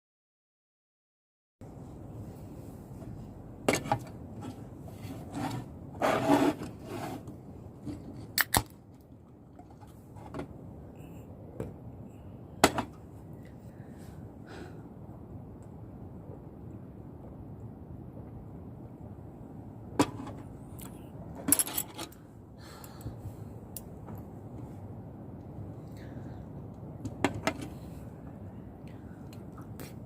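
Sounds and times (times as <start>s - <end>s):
rustling or scraping: 2.0s - 8.4s.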